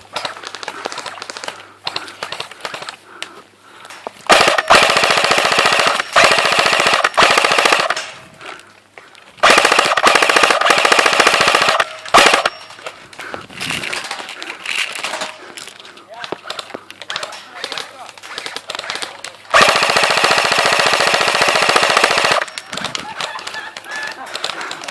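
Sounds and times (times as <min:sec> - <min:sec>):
automatic gunfire bursts: 0:04.3 - 0:08.1, 0:09.4 - 0:12.7, 0:18.4 - 0:23.6.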